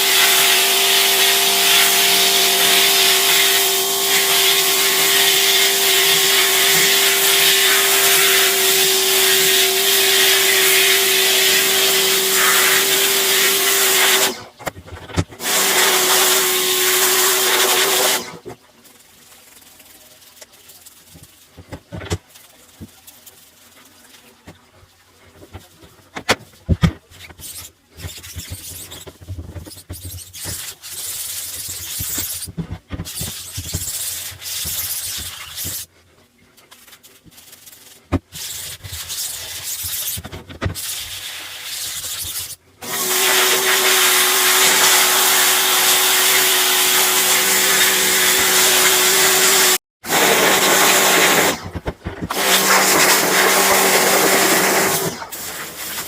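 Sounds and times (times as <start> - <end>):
pressure washer spray hissing: 0.0 - 14.3
pressure washer machine hum: 0.0 - 14.4, 15.4 - 18.4, 42.8 - 56.0.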